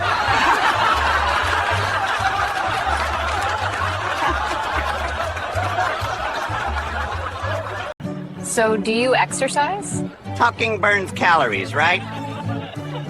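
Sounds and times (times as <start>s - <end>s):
people laughing: 0.0s - 8.0s, 10.1s - 13.0s.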